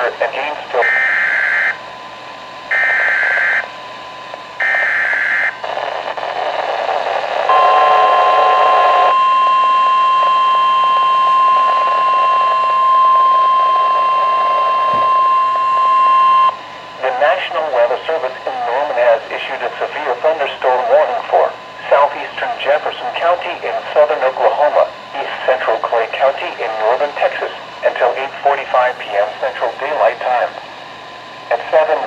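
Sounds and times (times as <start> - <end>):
radio hiss: 0.0 - 1.8, 2.7 - 3.7, 4.3 - 9.1, 17.0 - 32.0
steady warning alarm tone: 0.0 - 18.9
screeching digital data bursts: 2.7 - 3.7, 4.6 - 5.6.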